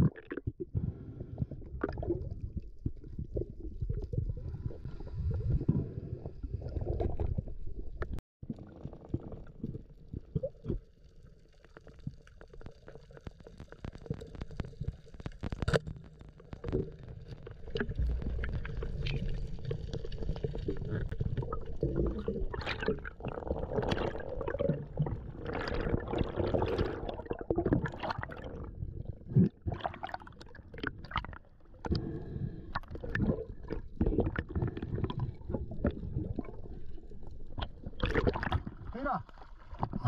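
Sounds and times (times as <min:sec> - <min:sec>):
water sloshing and gurgling: 0:00.0 - 0:40.0
low rumble: 0:17.8 - 0:20.8.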